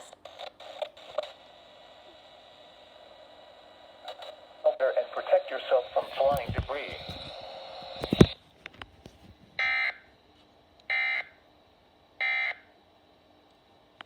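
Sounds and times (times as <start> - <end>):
radio hiss: 0.0 - 8.4.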